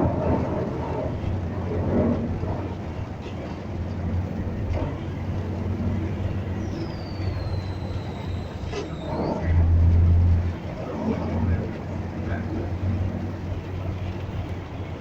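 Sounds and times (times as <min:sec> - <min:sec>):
vehicle engine humming: 0:00.0 - 0:15.0
high squeal gliding down: 0:05.8 - 0:10.8.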